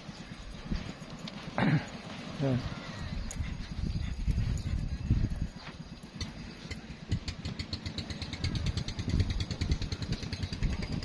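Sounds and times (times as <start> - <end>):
small engine running: 5.9 - 11.0.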